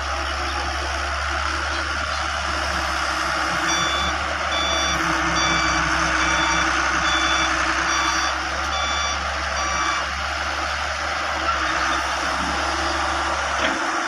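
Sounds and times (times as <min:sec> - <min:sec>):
diesel engine running: 0:00.0 - 0:14.0
reversing alarm beeping: 0:03.6 - 0:10.1.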